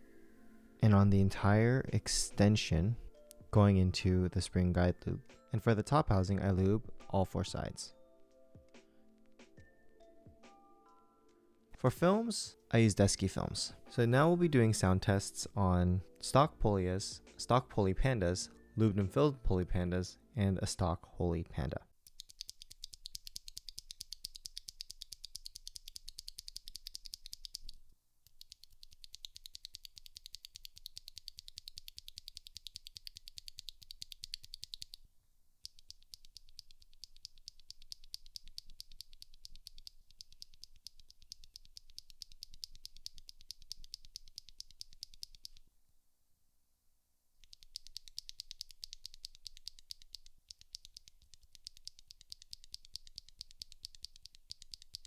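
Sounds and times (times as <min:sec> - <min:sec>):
mechanical keyboard switches clicking: 0:22.1 - 0:35.0, 0:47.4 - 0:55.0.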